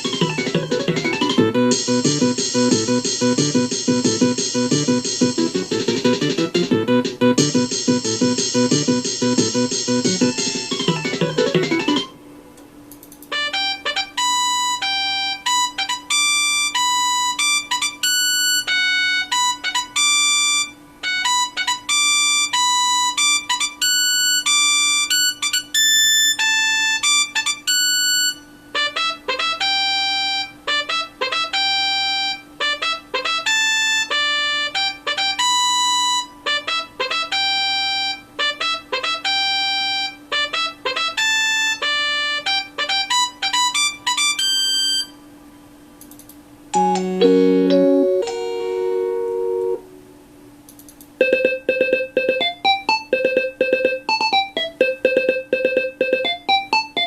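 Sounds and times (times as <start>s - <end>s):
electronic ringtone melody: 0.0s - 4.9s, 46.8s - 49.9s, 51.2s - 57.0s
faint steady hum: 0.0s - 57.0s.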